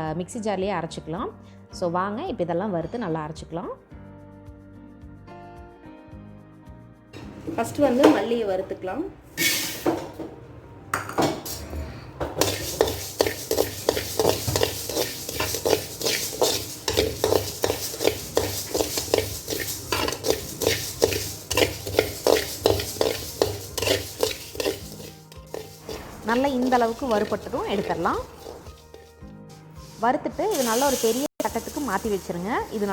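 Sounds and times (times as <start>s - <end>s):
spoon scraping a pan: 9.4s - 10.2s, 11.2s - 31.3s
seeds rattling in a pan: 12.4s - 29.2s.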